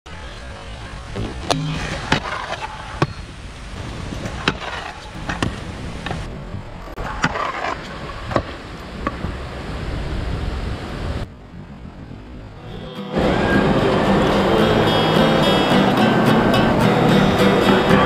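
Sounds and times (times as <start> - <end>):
skateboard wheels rolling on pavement: 0.1 - 18.0
skateboard popping and landing clacks: 4.2 - 6.3.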